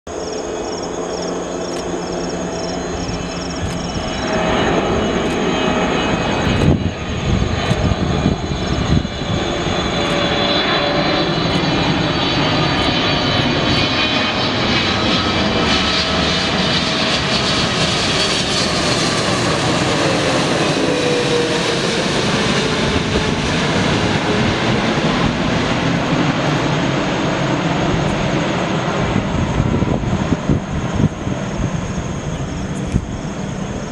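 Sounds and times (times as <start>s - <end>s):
jet airliner engines passing: 0.1s - 33.9s
wind thumps on microphone: 6.4s - 9.4s, 29.2s - 33.2s.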